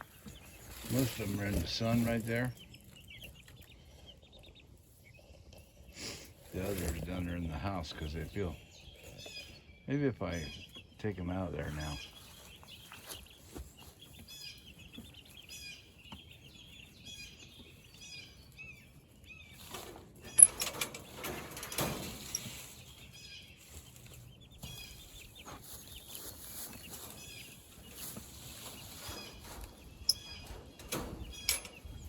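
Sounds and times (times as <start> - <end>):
wing flapping and scuffling: 0.0 - 3.6, 11.6 - 32.0
chicks peeping and chirping: 0.0 - 32.0.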